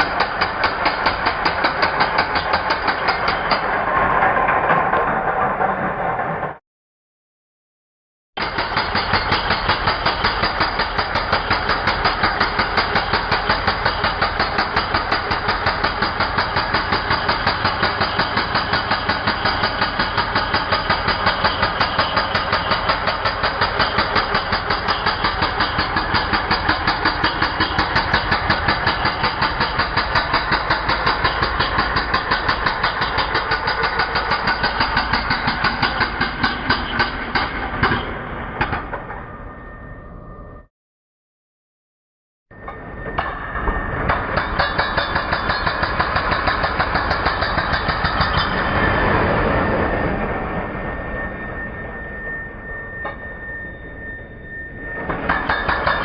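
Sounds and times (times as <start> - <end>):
electric concrete breaker hammering: 8.4 - 37.9, 44.1 - 48.8, 55.1 - 56.0.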